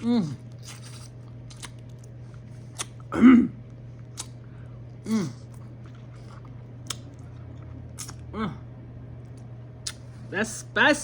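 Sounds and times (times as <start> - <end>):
mouth smacking while eating: 0.0 - 3.1, 4.0 - 4.5, 5.1 - 8.3, 9.8 - 10.1
throat clearing: 3.1 - 3.6, 5.0 - 5.5.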